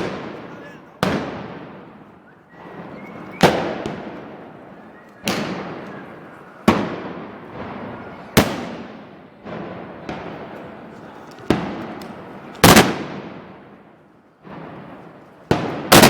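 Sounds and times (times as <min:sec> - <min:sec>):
loud echoing gunpowder bangs: 0:00.0 - 0:02.0, 0:05.2 - 0:10.6, 0:12.6 - 0:13.8, 0:14.4 - 0:16.0.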